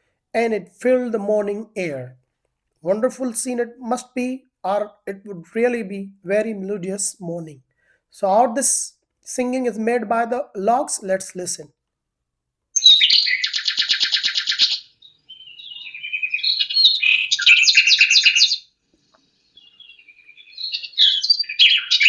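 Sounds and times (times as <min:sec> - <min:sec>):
lark singing: 0:12.8 - 0:18.7, 0:19.4 - 0:22.0.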